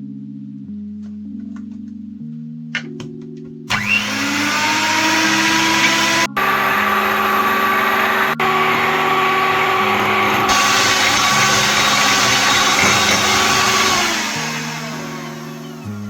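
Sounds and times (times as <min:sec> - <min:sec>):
background music: 0:00.0 - 0:16.0
electric mixer motor running: 0:03.7 - 0:16.0.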